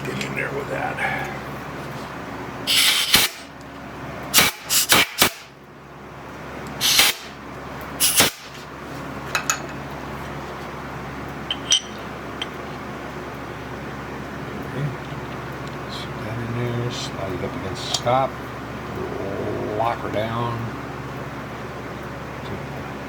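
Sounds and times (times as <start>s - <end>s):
machine hum: 0.0s - 23.0s
light metal clinks: 11.5s - 12.6s.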